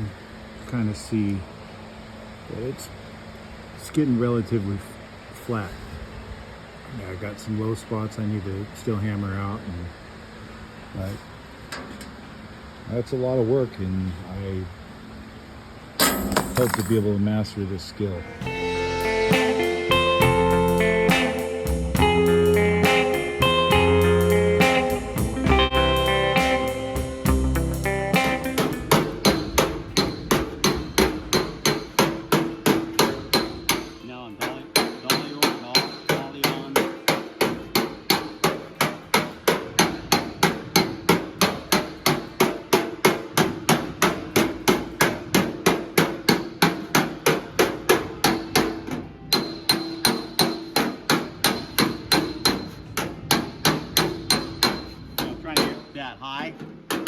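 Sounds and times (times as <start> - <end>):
hammer striking sheet steel: 16.0 - 17.2, 28.5 - 57.0.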